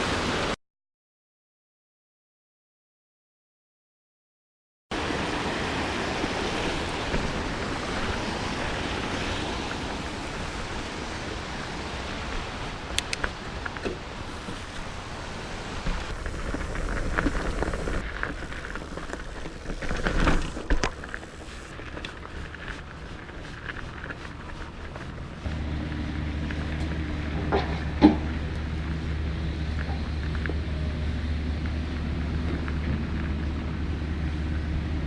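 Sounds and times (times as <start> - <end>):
tyres rolling on dirt trail: 4.9 - 35.0
wind on microphone: 5.2 - 25.7
bike knocks and rattles: 15.8 - 22.6.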